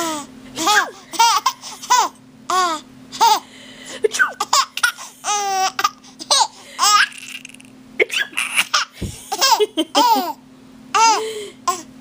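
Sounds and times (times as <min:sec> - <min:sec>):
baby laughing: 0:00.0 - 0:03.4, 0:04.1 - 0:11.9
baby squealing: 0:05.2 - 0:08.9.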